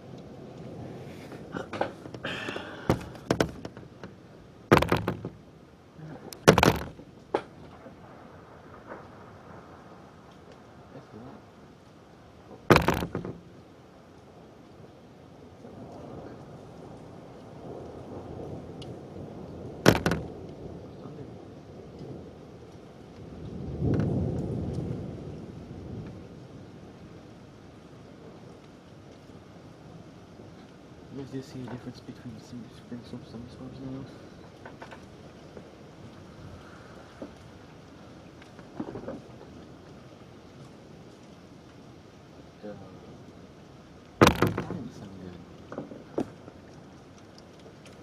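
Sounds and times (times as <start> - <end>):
rumbling thunder: 0.0 - 5.6, 6.2 - 11.6, 15.4 - 28.6
wind noise: 0.0 - 10.1, 12.4 - 13.7, 15.6 - 29.7, 44.1 - 48.0
steady rain: 0.0 - 48.0
irregular knocks and thuds: 1.3 - 5.5, 6.3 - 8.0, 12.5 - 13.6, 19.8 - 20.4, 23.8 - 24.5, 38.4 - 39.6, 44.2 - 46.8
sharp thunder cracks: 15.7 - 22.4, 23.2 - 26.3, 44.2 - 45.2.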